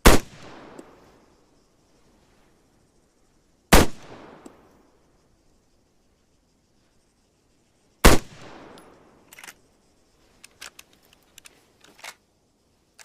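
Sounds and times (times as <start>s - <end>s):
rifle shot with echo: 0.0s - 1.0s, 3.7s - 4.6s, 8.0s - 9.0s
faint short clicks: 8.7s - 9.6s, 10.3s - 12.2s.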